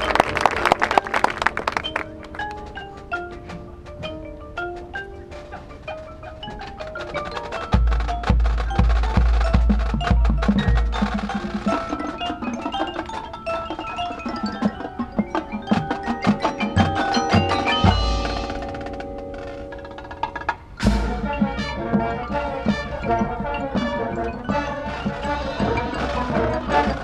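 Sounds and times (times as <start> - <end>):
mallet percussion notes: 0.0 - 27.0
bell-like chimes: 7.6 - 27.0.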